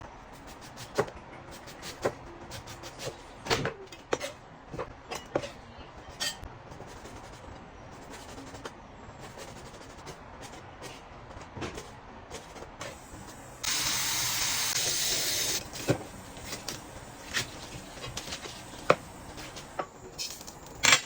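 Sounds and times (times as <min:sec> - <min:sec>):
dishes and utensils clattering: 0:03.6 - 0:06.4.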